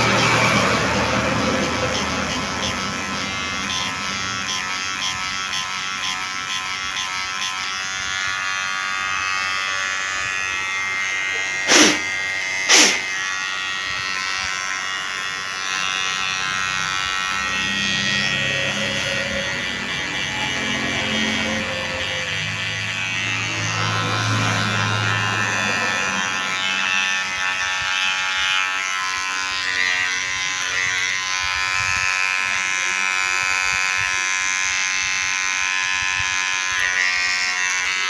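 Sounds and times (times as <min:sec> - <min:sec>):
hair clipper buzzing: 0:00.0 - 0:38.0
short loud noise bursts: 0:11.7 - 0:13.2.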